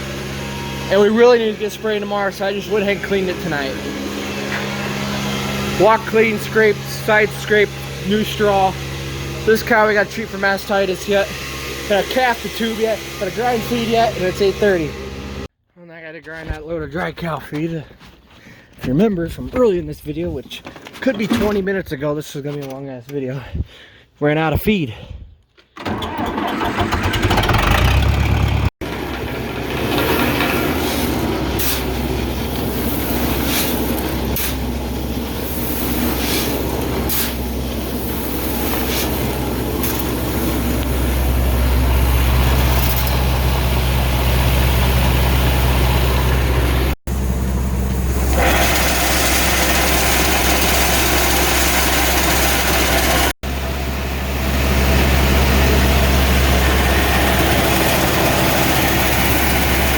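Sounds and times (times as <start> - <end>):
tractor engine running: 0.0 - 15.5, 25.8 - 59.9.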